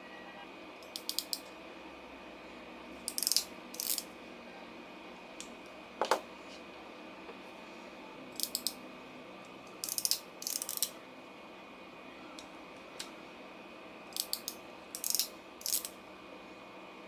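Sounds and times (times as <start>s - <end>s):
ratcheting crimping tool clicking: 0.8s - 1.5s, 3.1s - 4.1s, 8.4s - 8.8s, 9.8s - 10.9s, 14.1s - 16.0s.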